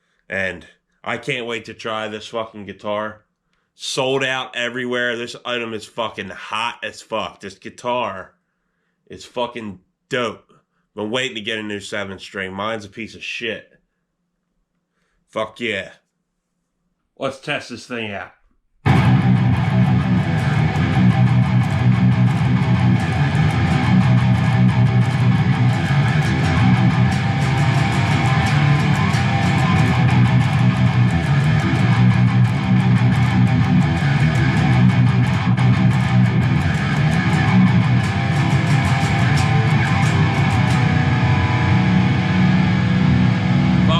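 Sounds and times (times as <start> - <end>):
distorted electric guitar riffing: 18.9 - 43.9.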